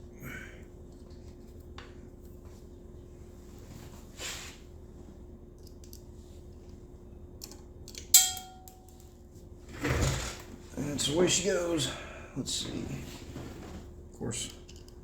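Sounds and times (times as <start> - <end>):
screw clinking on metal: 7.9 - 9.0.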